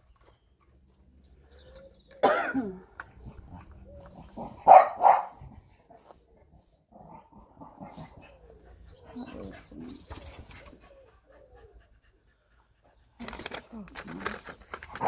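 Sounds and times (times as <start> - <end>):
dog yelping: 4.6 - 5.3
dog barking sharply: 4.6 - 5.4.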